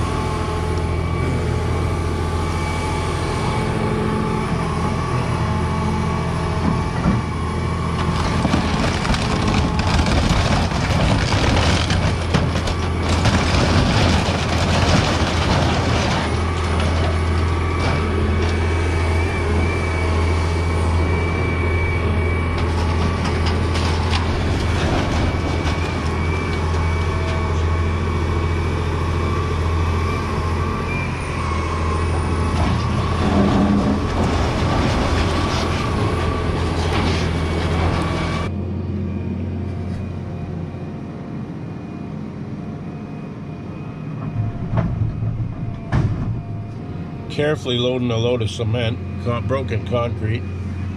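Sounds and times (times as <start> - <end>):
excavator diesel engine running: 0.0 - 50.9
demolition debris crashing: 6.5 - 28.5, 32.0 - 38.5.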